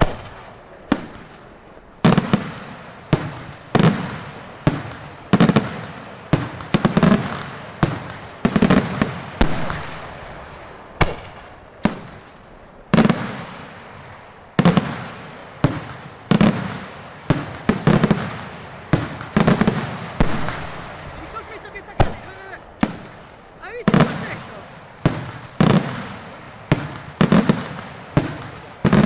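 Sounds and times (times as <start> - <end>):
firework shells banging with echo: 13.0 - 29.0.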